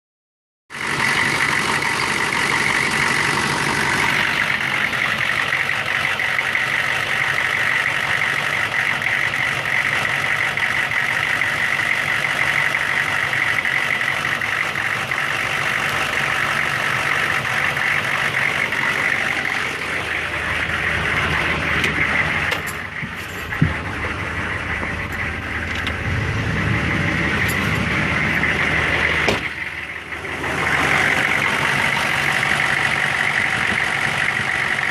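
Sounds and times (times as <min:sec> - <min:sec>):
diesel engine running: 0:00.7 - 0:34.9
high whine: 0:17.1 - 0:34.6.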